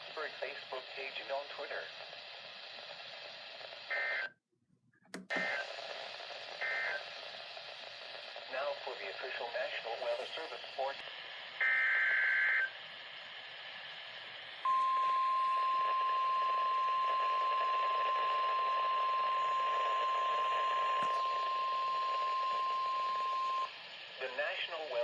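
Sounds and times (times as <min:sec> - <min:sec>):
radio hiss: 0:00.0 - 0:04.2, 0:05.2 - 0:14.7, 0:17.0 - 0:25.0
steady single-pitch alarm tone: 0:14.6 - 0:23.8.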